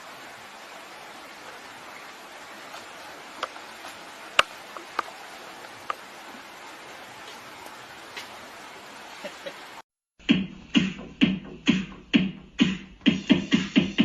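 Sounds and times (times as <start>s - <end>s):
faint hiss with ticks: 2.7s - 6.4s
electronic music with heavy beat: 10.2s - 14.0s.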